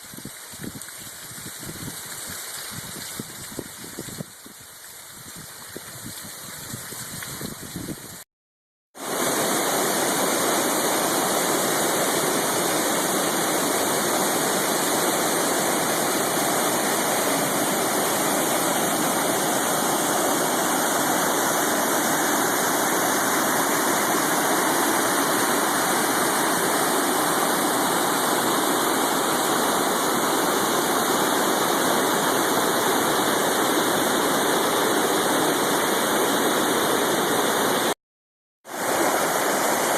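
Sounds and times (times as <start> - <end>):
creek rushing over rocks: 9.0 - 38.0, 38.7 - 39.9.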